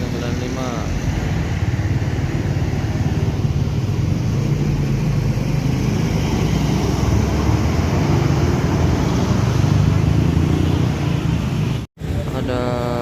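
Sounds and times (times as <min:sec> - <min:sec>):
bus diesel engine rumbling: 0:00.0 - 0:06.2.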